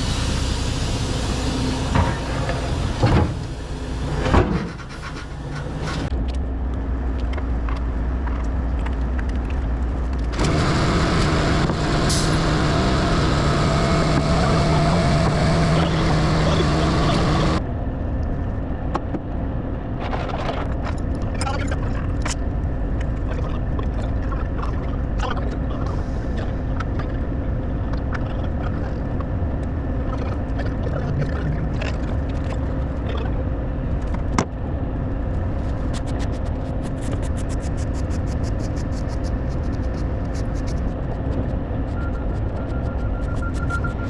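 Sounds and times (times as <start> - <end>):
excavator diesel engine running: 0.0 - 7.1, 10.0 - 17.7, 37.7 - 44.0.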